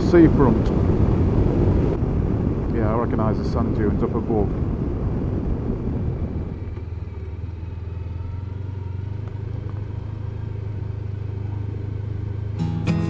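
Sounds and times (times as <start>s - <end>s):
motorcycle engine running: 6.0s - 13.0s.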